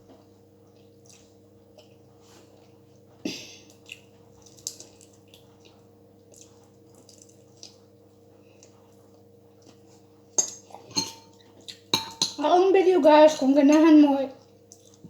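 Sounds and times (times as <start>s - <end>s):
steady low hum: 0.0s - 15.0s
wet chewing: 3.7s - 11.9s, 14.4s - 15.0s.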